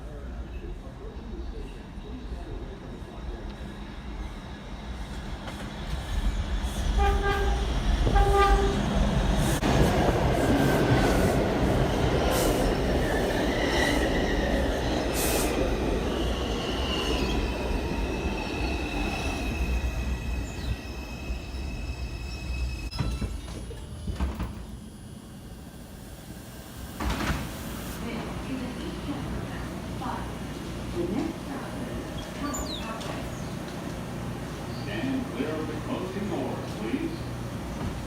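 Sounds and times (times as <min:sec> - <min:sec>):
train wheels rumbling on rail: 0:00.2 - 0:38.0
train horn blasts: 0:07.0 - 0:08.9.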